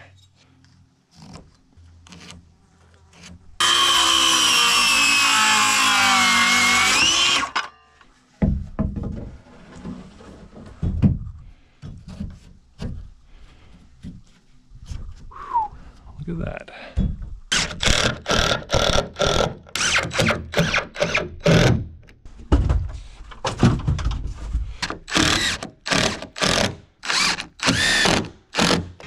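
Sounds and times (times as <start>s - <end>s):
electric saw cutting wood: 3.6s - 7.7s, 17.6s - 21.6s, 25.1s - 28.9s
wooden knocks: 8.4s - 9.4s.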